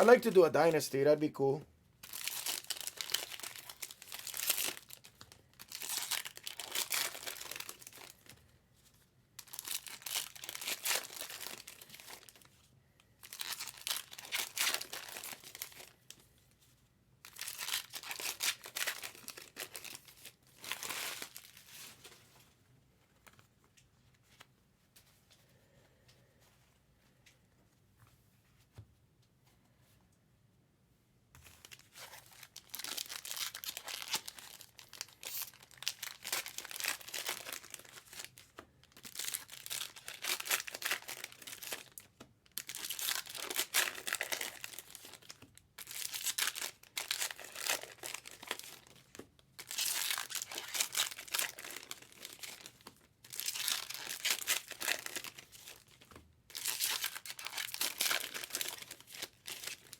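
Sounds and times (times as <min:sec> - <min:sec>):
card wrappers tearing and crinkling: 0:00.0 - 0:01.1, 0:02.0 - 0:08.4, 0:09.4 - 0:12.5, 0:13.2 - 0:16.1, 0:17.2 - 0:22.2, 0:31.6 - 0:59.9.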